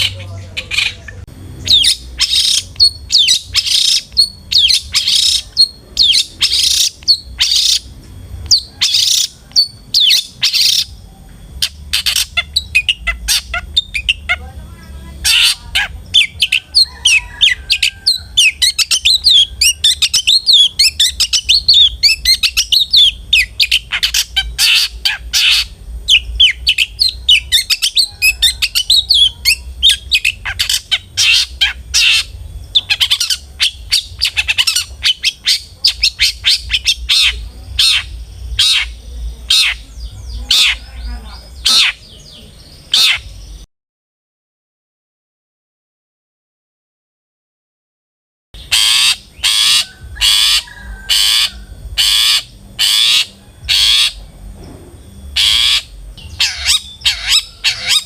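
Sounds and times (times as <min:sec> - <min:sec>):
bird rasping squawks: 0:00.0 - 0:07.9, 0:11.6 - 0:14.5, 0:15.2 - 0:39.8, 0:40.5 - 0:42.1, 0:42.9 - 0:43.3, 0:48.6 - 0:54.2, 0:55.4 - 0:58.0
bird chirping chatter: 0:00.0 - 0:43.7, 0:48.6 - 0:58.0.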